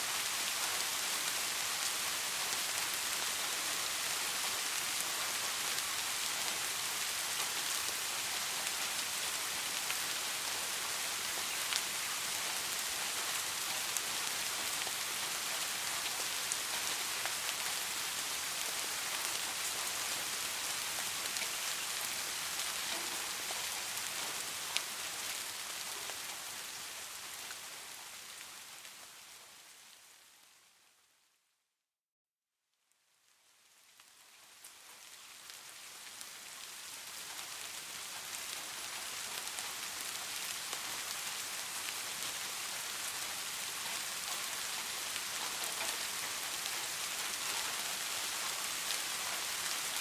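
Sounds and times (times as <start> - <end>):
steady rain falling: 0.0 - 31.4, 32.8 - 50.0.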